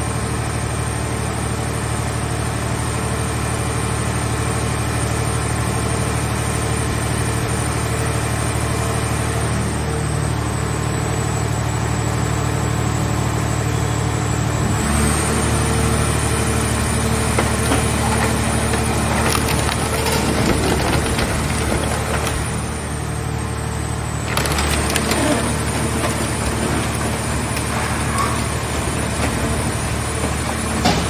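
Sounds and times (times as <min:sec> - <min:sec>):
baler power unit running: 0:16.0 - 0:31.0.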